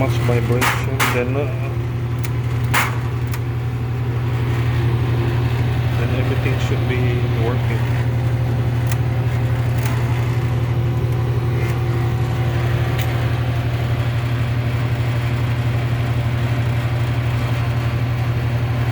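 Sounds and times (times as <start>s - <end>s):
refrigeration unit humming: 0.0s - 18.9s.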